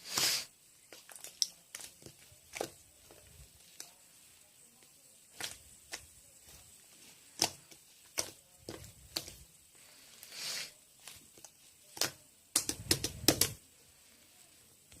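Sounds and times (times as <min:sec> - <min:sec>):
short hiss: 0:00.0 - 0:00.6, 0:09.9 - 0:10.8
sharp clicks and taps: 0:11.4 - 0:13.6.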